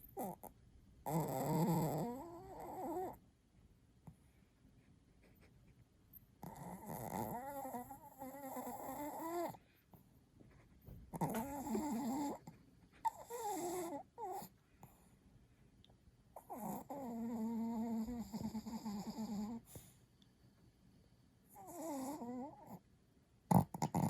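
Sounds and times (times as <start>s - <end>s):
dog snoring: 0.1s - 3.2s, 6.4s - 9.6s, 11.1s - 15.1s, 16.4s - 20.0s, 21.5s - 22.8s, 23.5s - 24.0s.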